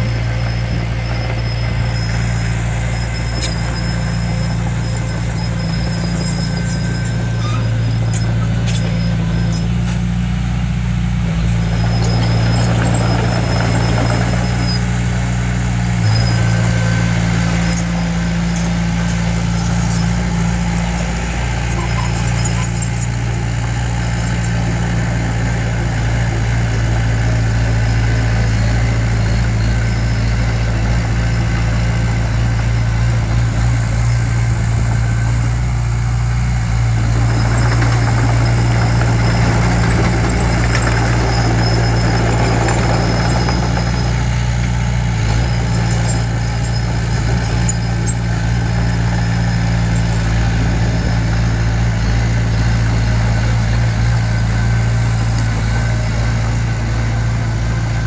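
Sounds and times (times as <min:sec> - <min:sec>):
diesel engine of heavy machinery: 0:00.0 - 0:58.0.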